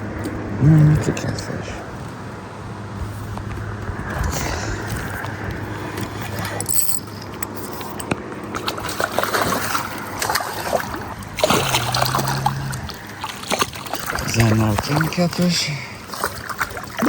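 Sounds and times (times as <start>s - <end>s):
water splashing and sloshing: 2.0s - 17.0s
fishing tackle clicks and rattles: 6.0s - 9.6s.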